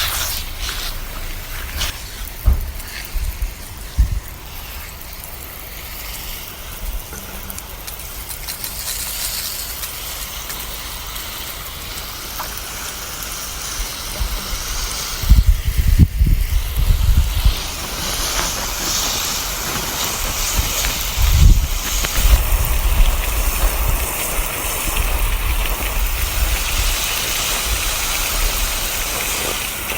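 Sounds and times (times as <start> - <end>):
garden hose spraying water: 0.0 - 29.9
low rumbling bumps: 0.4 - 4.4, 15.2 - 26.6.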